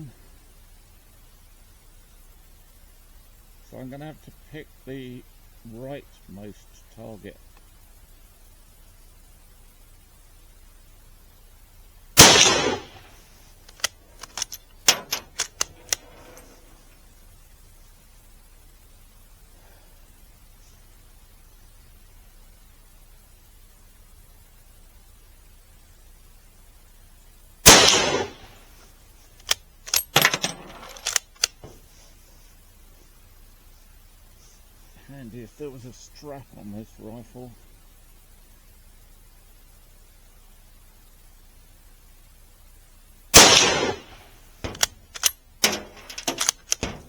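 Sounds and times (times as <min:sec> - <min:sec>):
rifle bolt metallic clicks: 0:12.2 - 0:16.6, 0:27.7 - 0:28.6, 0:29.4 - 0:31.8, 0:43.4 - 0:47.0
rifle shot: 0:12.2 - 0:16.6, 0:27.7 - 0:28.7, 0:43.4 - 0:47.0.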